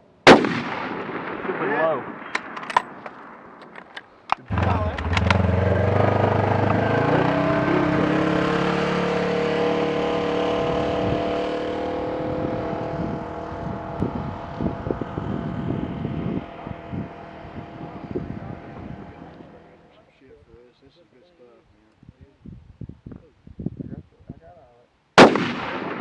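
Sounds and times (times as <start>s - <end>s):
motor engine running: 4.5s - 20.0s.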